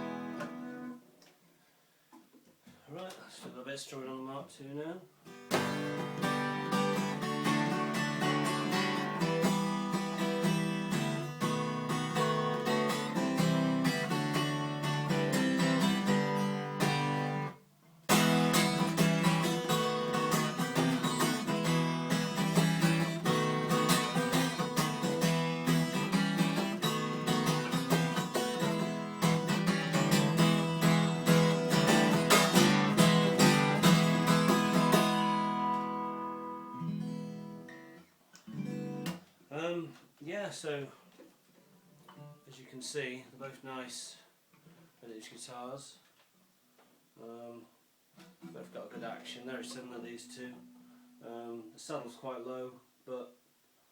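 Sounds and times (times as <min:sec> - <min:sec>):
acoustic guitar strummed chords: 0:00.0 - 0:01.0, 0:05.3 - 0:39.3, 0:48.4 - 0:51.6.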